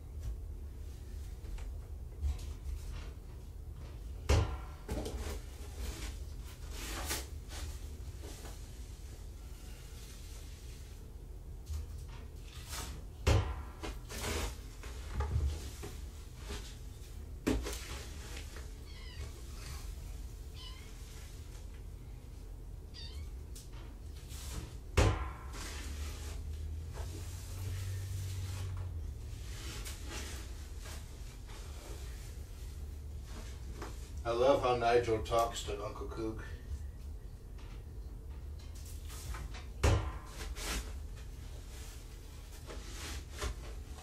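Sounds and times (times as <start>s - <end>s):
cat meowing: 18.8s - 19.7s, 20.5s - 21.0s, 22.9s - 23.4s.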